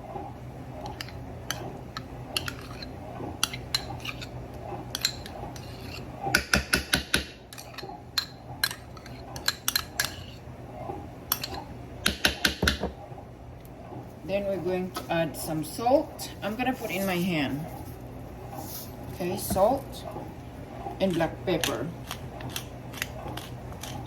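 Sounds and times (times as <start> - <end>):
utensil clinking against bowl: 0.8 - 4.3, 4.9 - 10.4.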